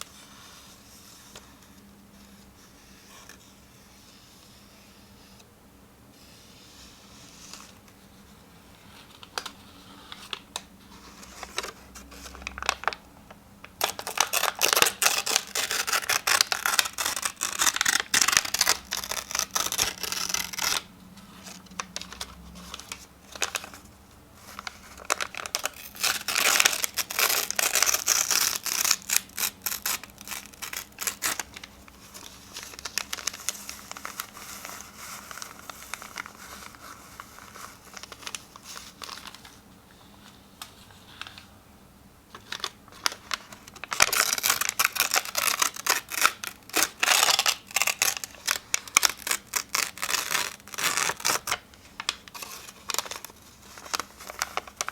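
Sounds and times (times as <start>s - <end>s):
paper tearing: 13.8s - 23.6s, 24.6s - 38.4s, 43.8s - 54.9s
paper rustling: 13.8s - 41.5s, 42.3s - 54.9s.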